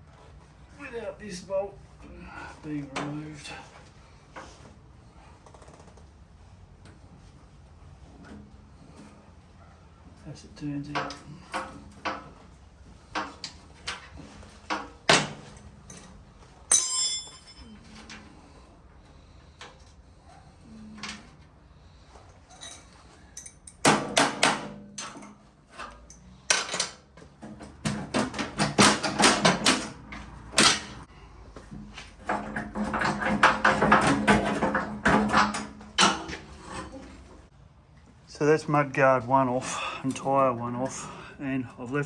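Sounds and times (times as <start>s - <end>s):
metal parts knocking and clinking: 14.7s - 18.3s, 22.5s - 27.0s
ringing metallic clang: 16.7s - 18.0s.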